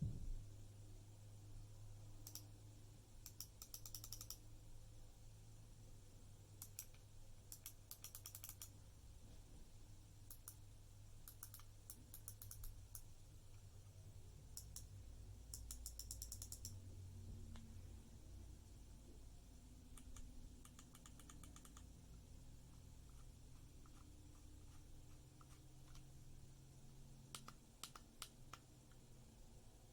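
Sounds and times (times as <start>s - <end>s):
low steady hum: 0.0s - 29.9s
computer mouse clicking: 2.2s - 2.5s, 3.2s - 4.4s, 6.6s - 8.8s, 10.3s - 10.6s, 11.2s - 13.6s, 14.6s - 14.9s, 15.5s - 16.8s, 19.9s - 26.2s, 27.3s - 29.1s.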